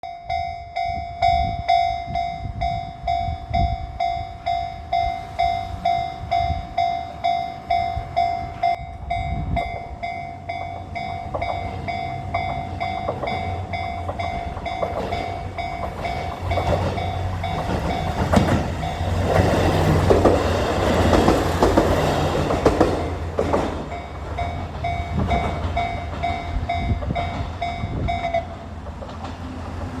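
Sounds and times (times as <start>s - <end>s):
train wheels clattering over rails: 9.5s - 30.0s.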